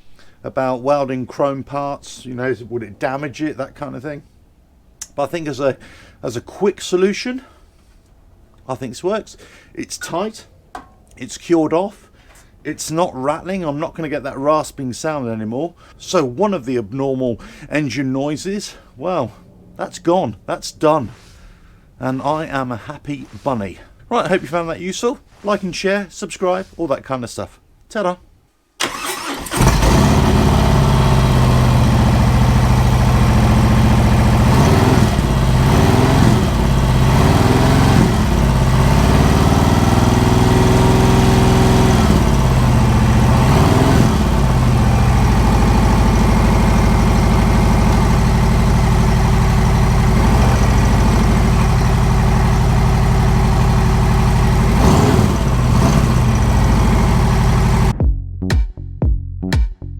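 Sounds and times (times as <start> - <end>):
motorcycle engine idling and revving: 28.9 - 58.0.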